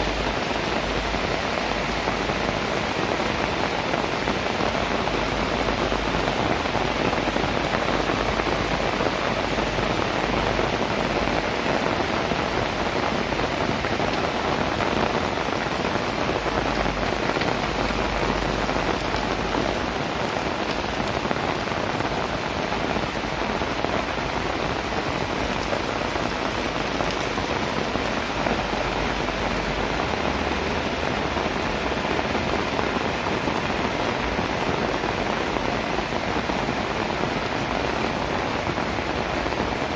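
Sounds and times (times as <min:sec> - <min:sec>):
heavy rain falling: 0:00.0 - 0:39.9.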